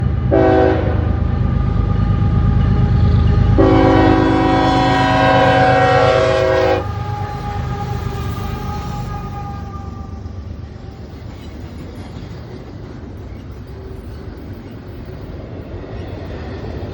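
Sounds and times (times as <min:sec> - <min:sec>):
diesel locomotive and train rumbling: 0:00.0 - 0:16.9
locomotive air horn blasts: 0:00.3 - 0:01.2, 0:03.4 - 0:10.3.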